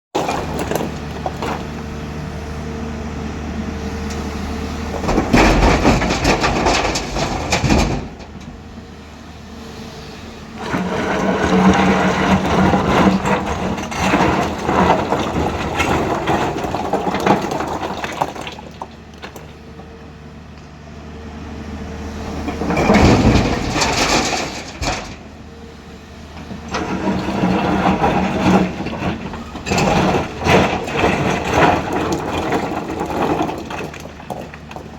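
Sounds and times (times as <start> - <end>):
rocks loading into truck: 0.2 - 20.8, 21.5 - 34.9
excavator diesel engine running: 0.2 - 34.9.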